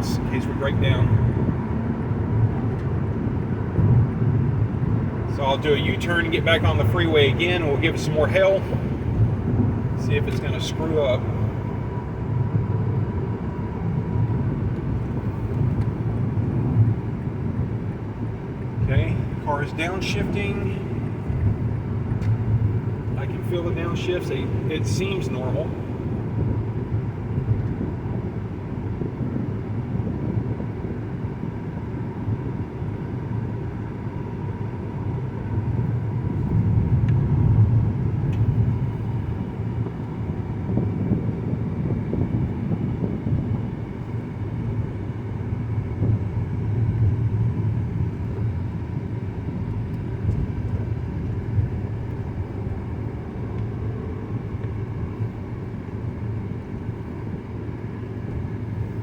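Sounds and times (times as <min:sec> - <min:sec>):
car engine and road rumble: 0:00.0 - 0:59.0.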